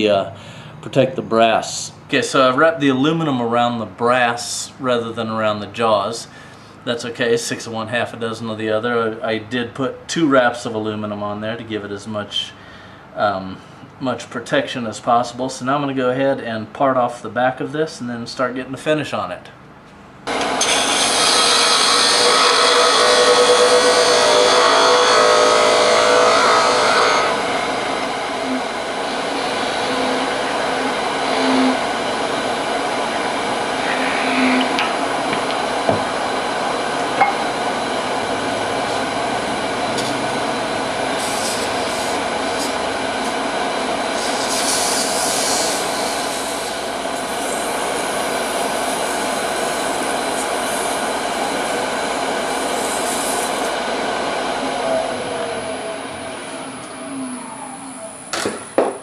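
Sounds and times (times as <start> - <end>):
wood lathe motor hum: 20.3 - 59.0
high hissing bursts: 28.3 - 34.8, 41.1 - 43.4, 44.1 - 51.8.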